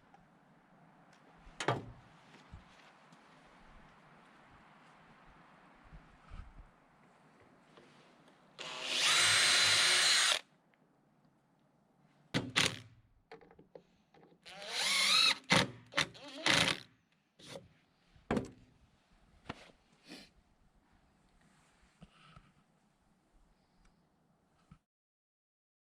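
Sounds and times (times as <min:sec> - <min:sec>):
electric drill whining: 0:08.6 - 0:10.4, 0:14.5 - 0:16.8.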